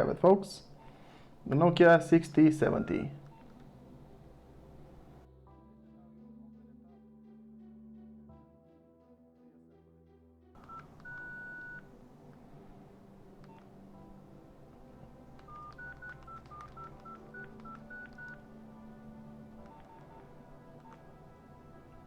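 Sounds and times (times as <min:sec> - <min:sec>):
phone keypad beeps: 0:02.6 - 0:03.6, 0:10.6 - 0:11.9, 0:13.4 - 0:13.7, 0:15.4 - 0:18.5, 0:19.6 - 0:21.0.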